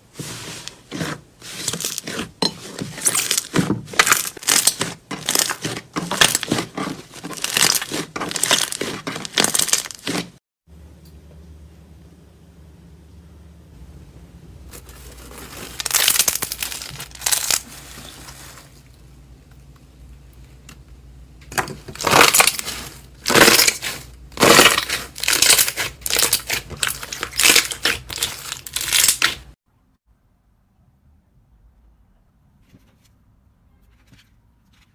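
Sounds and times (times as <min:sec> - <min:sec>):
slime squishing: 0:00.2 - 0:10.4, 0:14.7 - 0:18.9, 0:21.5 - 0:29.6.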